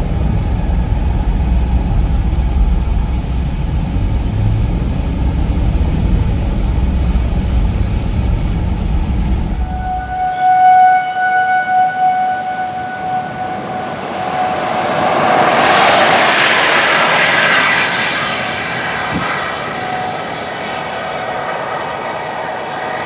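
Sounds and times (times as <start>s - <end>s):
tornado warning siren wailing: 0.0s - 23.0s
passing vehicle rushing: 12.4s - 23.0s.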